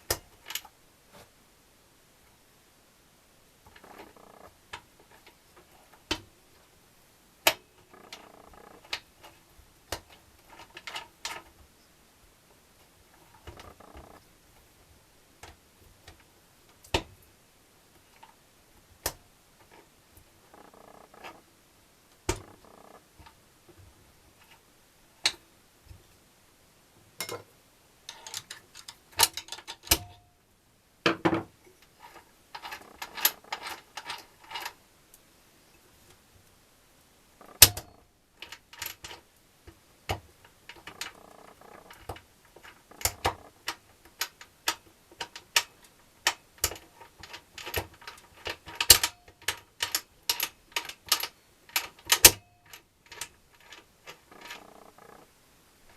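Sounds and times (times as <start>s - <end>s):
tools and engine parts clinking: 28.1s - 30.2s, 46.3s - 55.2s.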